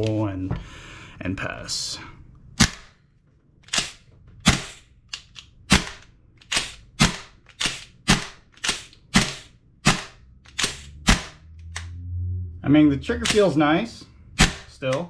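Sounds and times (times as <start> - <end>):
airsoft rifle shots: 2.6 - 3.0, 3.7 - 4.9, 5.7 - 11.4, 14.4 - 15.0.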